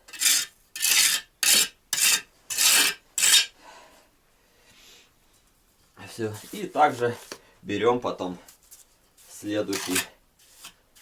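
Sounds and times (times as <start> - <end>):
trowel scraping mortar: 0.0 - 3.5, 9.3 - 11.0.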